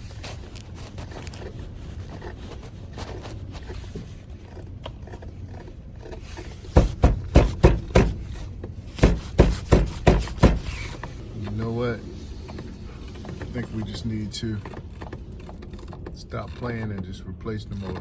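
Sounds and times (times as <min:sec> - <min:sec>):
low steady hum: 0:00.0 - 0:18.0
scraping and handling noises: 0:00.0 - 0:18.0
sharp loud knocks: 0:06.7 - 0:11.1.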